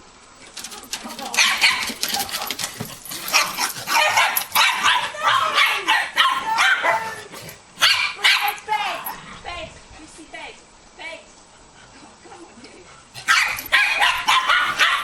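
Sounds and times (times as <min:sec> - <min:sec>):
dog barking: 0:01.2 - 0:09.2, 0:13.2 - 0:15.0.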